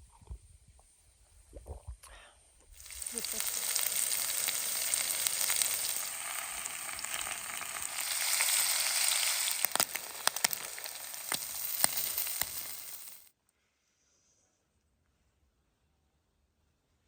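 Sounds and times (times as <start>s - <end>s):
food sizzling in a pan: 2.8s - 13.3s.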